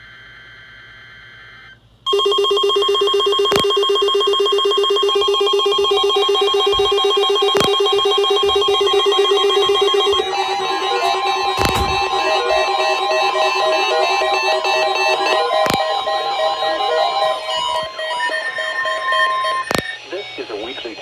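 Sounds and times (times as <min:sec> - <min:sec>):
alert radios beeping and ringing: 0:02.1 - 0:21.0
electronic data tones: 0:02.1 - 0:21.0
sharp clicks: 0:03.5 - 0:03.8, 0:05.7 - 0:20.6
steady alert tone: 0:04.8 - 0:21.0.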